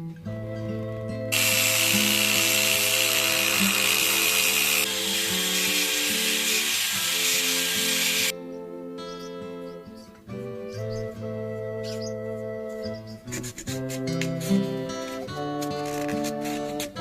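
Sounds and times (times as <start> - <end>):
power tool whining on wood: 1.3 - 8.3.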